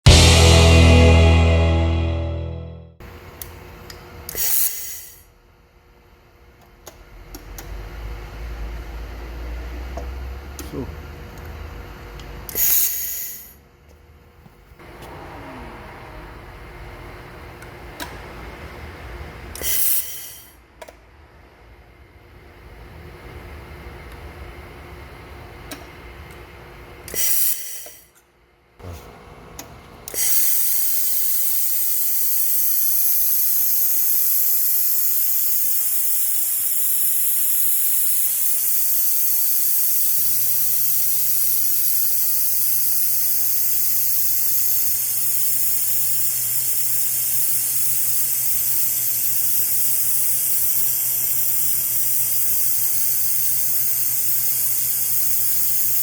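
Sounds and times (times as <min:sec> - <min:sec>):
laser welder hissing: 0:04.3 - 0:05.2, 0:12.5 - 0:13.5, 0:19.6 - 0:20.5, 0:27.1 - 0:28.0, 0:30.1 - 0:56.0.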